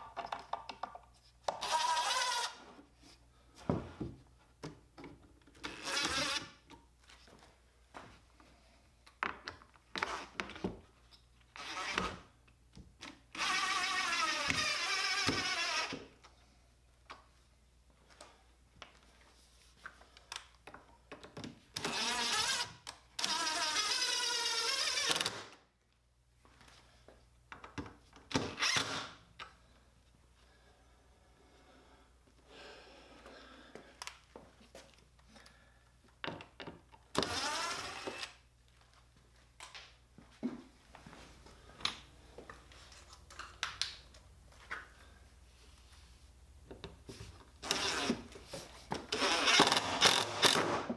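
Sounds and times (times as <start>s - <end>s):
power drill running: 1.6s - 2.6s, 13.4s - 16.0s, 21.8s - 25.4s, 37.2s - 38.4s, 47.6s - 48.3s, 49.1s - 50.9s.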